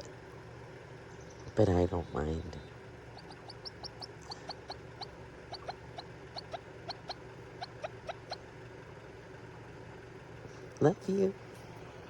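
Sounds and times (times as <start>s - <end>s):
small animal chirping: 3.0s - 8.5s.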